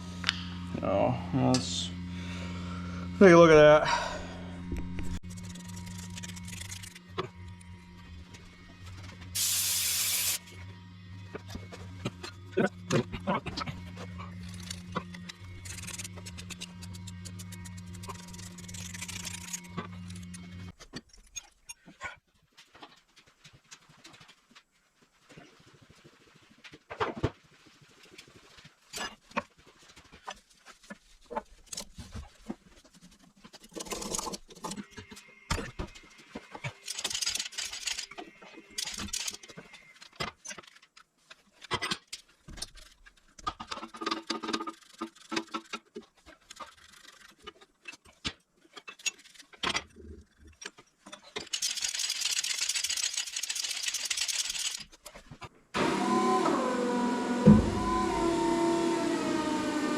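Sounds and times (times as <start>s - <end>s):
air hiss: 9.4s - 10.4s.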